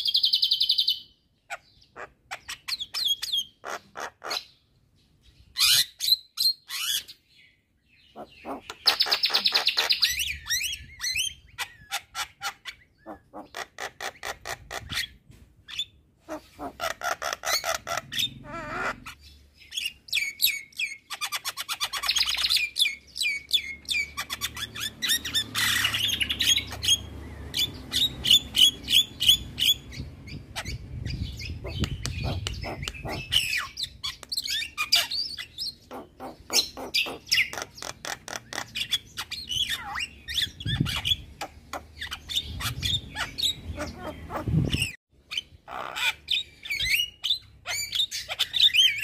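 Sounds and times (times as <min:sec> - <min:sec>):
bird singing with chattering rattles: 0:00.0 - 0:49.0
bird harsh squawks: 0:01.5 - 0:04.6, 0:08.0 - 0:19.2, 0:31.6 - 0:49.0.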